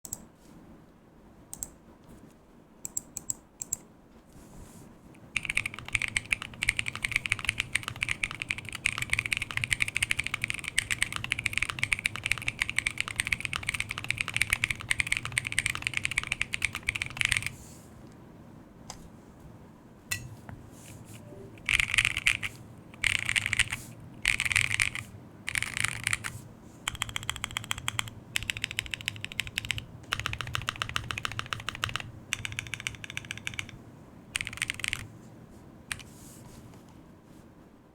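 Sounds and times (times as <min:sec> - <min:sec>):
mechanical keyboard typing: 0:05.3 - 0:17.6, 0:21.6 - 0:33.8, 0:34.4 - 0:35.1.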